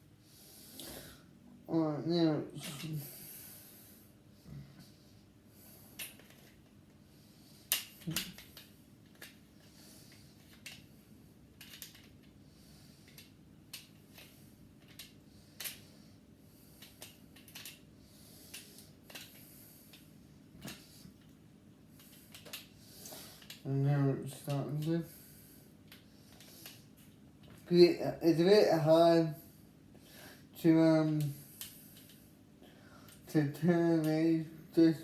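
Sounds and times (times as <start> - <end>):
small clicks of metal parts: 6.0 - 6.8, 7.7 - 10.9, 11.5 - 12.4, 13.0 - 15.9, 16.8 - 17.9, 18.5 - 21.4, 22.0 - 22.7, 23.4 - 23.7, 25.8 - 27.7, 31.0 - 32.2, 33.0 - 33.3.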